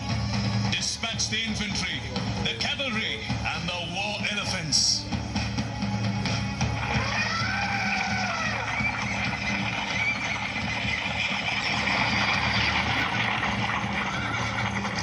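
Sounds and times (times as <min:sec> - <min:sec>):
horses neighing: 0:06.8 - 0:15.0
clatter of hooves: 0:07.9 - 0:15.0.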